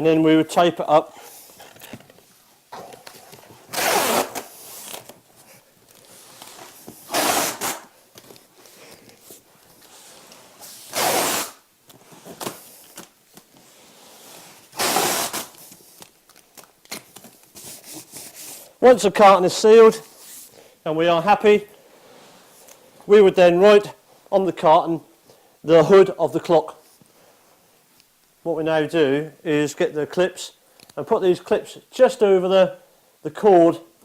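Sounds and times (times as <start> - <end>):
packing tape ripping off roll: 3.0 - 5.2, 6.0 - 13.6, 14.5 - 18.7.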